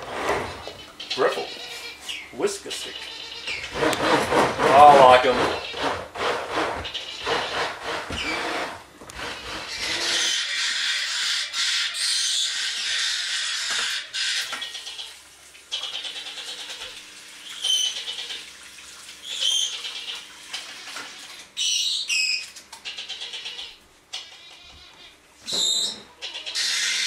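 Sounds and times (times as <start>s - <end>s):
parrot chicks begging calls: 0.1s - 18.5s, 19.2s - 27.0s
steady rasping noise: 3.5s - 12.0s
parrot squawks: 9.2s - 15.1s, 19.2s - 27.0s.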